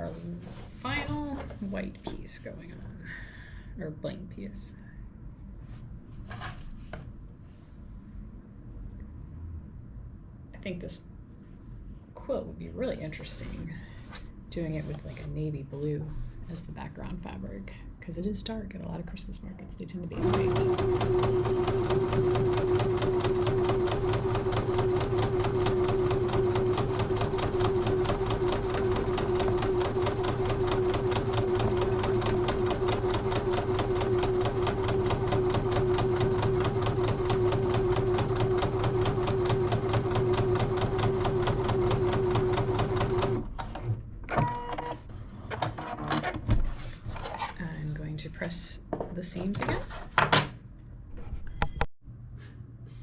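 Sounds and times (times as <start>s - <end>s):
sewing machine stitching: 20.2s - 43.8s.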